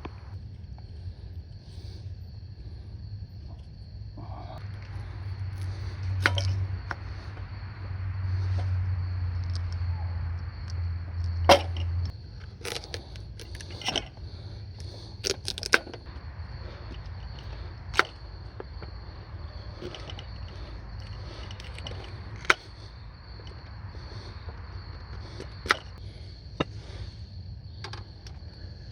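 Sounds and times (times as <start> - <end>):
low hum: 0.0 - 28.9.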